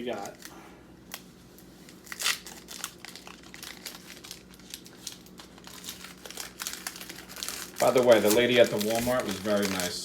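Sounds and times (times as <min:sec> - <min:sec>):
foil wrapper crinkling: 0:00.0 - 0:10.0.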